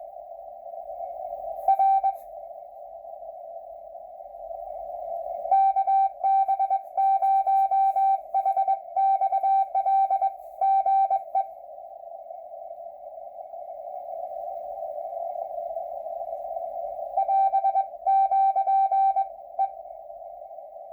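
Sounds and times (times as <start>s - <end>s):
morse code beeps: 1.7s - 2.2s, 5.5s - 11.5s, 17.2s - 19.8s
radio receiver hiss: 4.8s - 11.8s.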